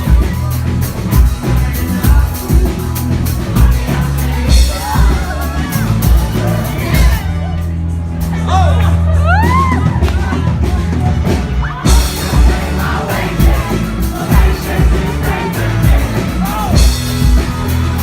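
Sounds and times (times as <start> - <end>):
drum beat: 0.0 - 7.4, 9.3 - 18.0
person singing: 0.0 - 7.7, 11.6 - 18.0
bass line: 0.0 - 18.0.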